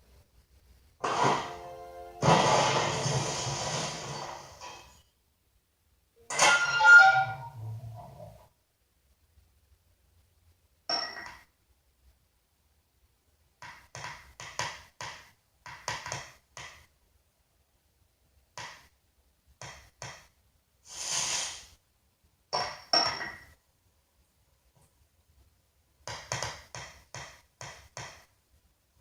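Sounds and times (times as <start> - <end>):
hiss-like noise: 0.0 - 5.1, 20.8 - 21.9.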